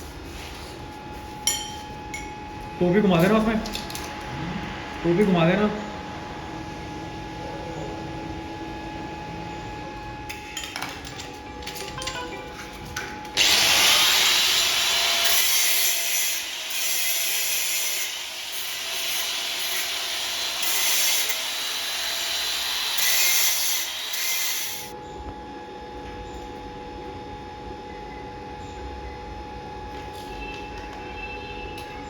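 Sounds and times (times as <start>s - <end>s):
power tool grinding steel: 13.4s - 24.9s.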